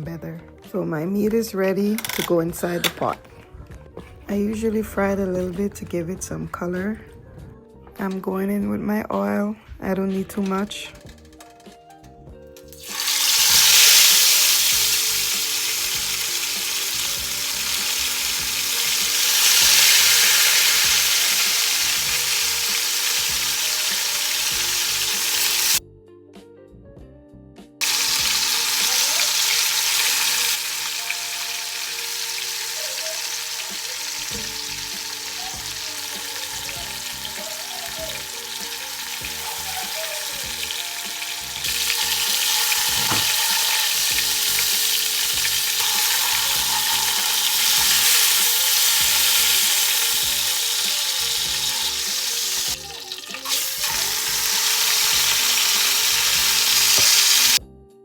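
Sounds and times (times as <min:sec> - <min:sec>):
chicken sizzling in hot oil: 0:12.7 - 0:25.8, 0:27.8 - 0:57.6.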